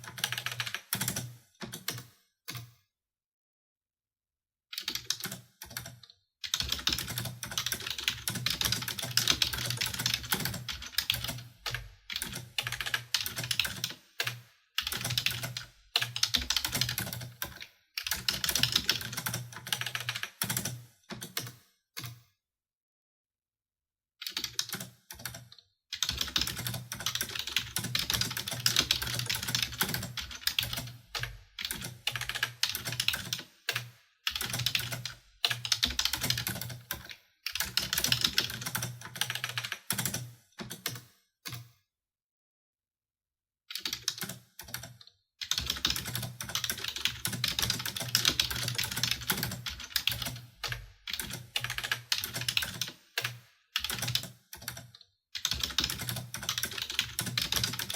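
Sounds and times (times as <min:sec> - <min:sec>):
typing on computer keyboard: 0:00.0 - 0:02.8, 0:04.7 - 0:22.3, 0:24.2 - 0:41.8, 0:43.7 - 0:57.9.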